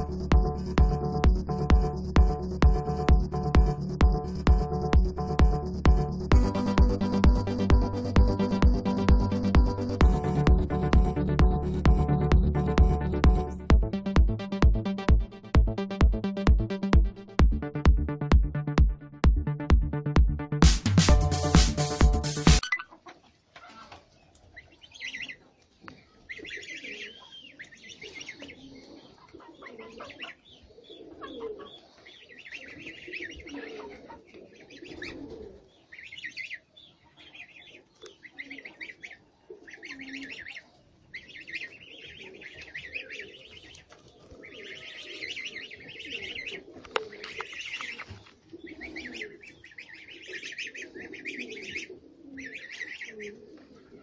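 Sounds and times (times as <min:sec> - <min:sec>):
small birds chirping: 0:22.6 - 0:54.0
pigeons cooing: 0:26.4 - 0:35.9, 0:37.7 - 0:54.0.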